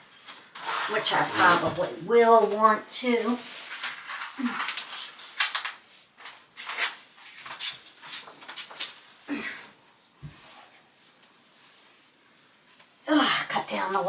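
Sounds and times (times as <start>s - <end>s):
clicks and rustles of wiring: 3.6s - 9.0s.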